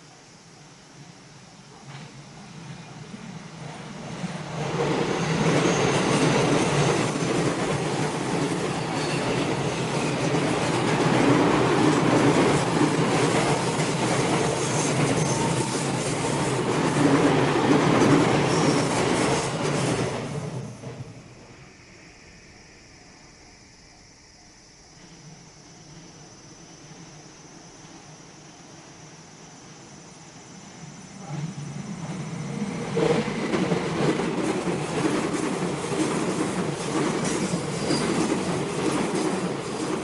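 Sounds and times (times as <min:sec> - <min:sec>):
train wheels rumbling and clattering: 0:03.2 - 0:21.6, 0:31.1 - 0:40.0
high wheel squeals: 0:05.2 - 0:07.1, 0:08.5 - 0:10.8, 0:18.4 - 0:19.5, 0:37.3 - 0:38.5.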